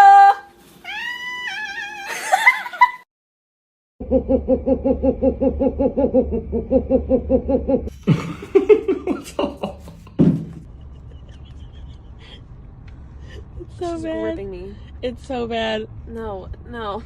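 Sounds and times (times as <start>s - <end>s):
cat meowing: 0.8s - 2.1s
rapid giggling laugh: 7.9s - 12.6s.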